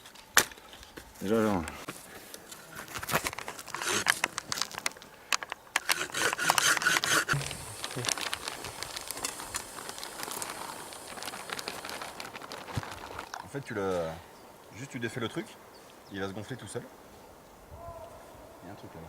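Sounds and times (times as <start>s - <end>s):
bags crinkling and rustling: 0.0s - 14.1s
clicks and crackles: 1.7s - 13.6s.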